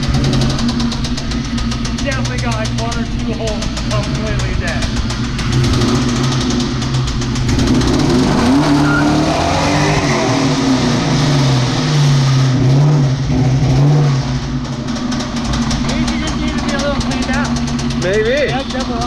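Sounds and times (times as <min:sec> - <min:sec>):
tyres spinning and squealing: 0:00.0 - 0:12.3
car engine revving hard: 0:00.0 - 0:19.0.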